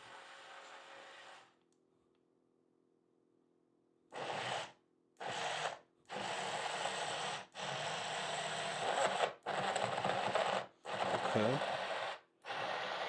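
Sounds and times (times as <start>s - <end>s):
blender motor running in pulses: 4.2s - 13.0s.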